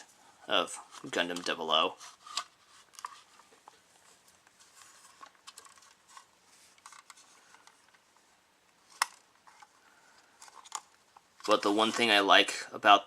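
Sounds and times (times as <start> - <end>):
plastic parts clicking and rustling: 0.9 - 3.8, 4.4 - 8.0, 8.8 - 12.2.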